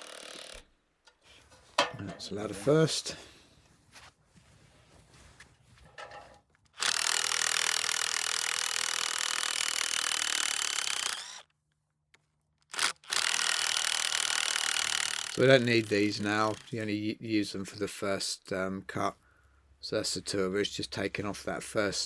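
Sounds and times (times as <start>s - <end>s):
power tool sawing: 0.0s - 0.7s, 6.8s - 11.5s, 12.7s - 16.9s.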